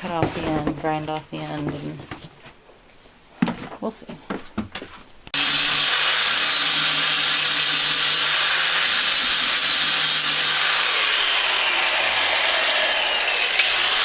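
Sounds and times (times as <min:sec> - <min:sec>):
electric grinder grinding metal: 0:05.3 - 0:14.0.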